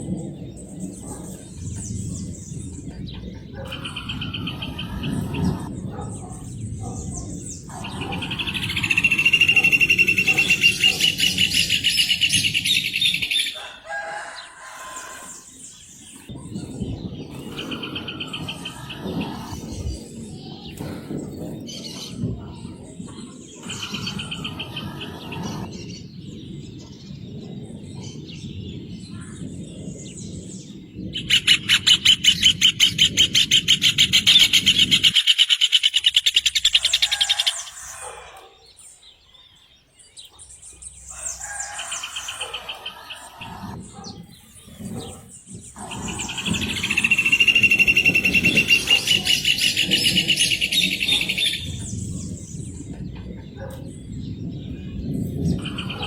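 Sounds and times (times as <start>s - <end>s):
bird trilling: 7.6s - 13.6s, 45.8s - 51.8s.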